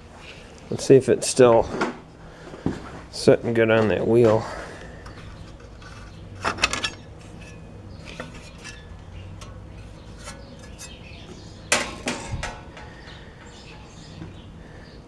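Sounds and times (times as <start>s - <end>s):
metallic clanks and rattles: 5.0s - 14.4s.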